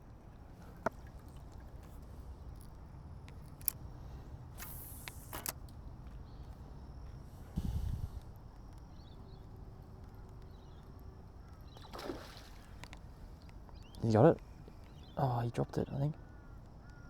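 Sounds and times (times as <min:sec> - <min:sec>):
kayak handling clicks: 0:01.8 - 0:03.9, 0:04.6 - 0:05.8
short hiss: 0:04.6 - 0:05.5, 0:07.5 - 0:08.3.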